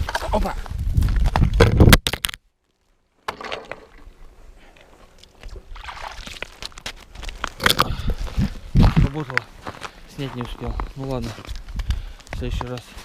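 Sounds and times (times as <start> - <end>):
water sloshing and splashing: 5.3 - 6.8.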